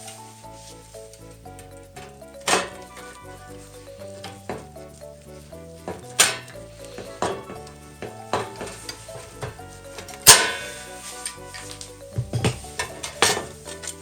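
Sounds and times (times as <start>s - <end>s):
background music: 0.0s - 14.0s
sharp knocks: 12.1s - 13.6s.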